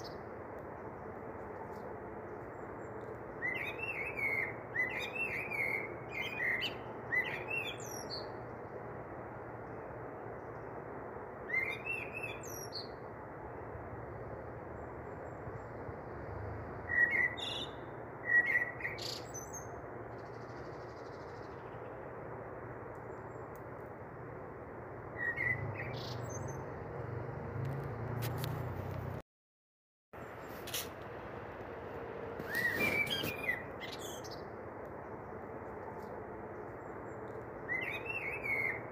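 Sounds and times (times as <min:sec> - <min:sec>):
small bird chirping: 0:32.4 - 0:34.5.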